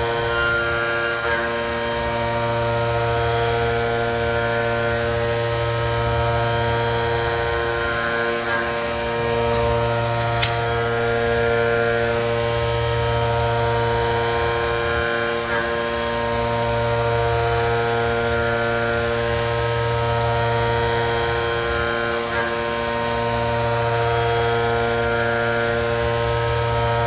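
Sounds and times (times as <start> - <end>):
sharp click: 10.4 - 10.7.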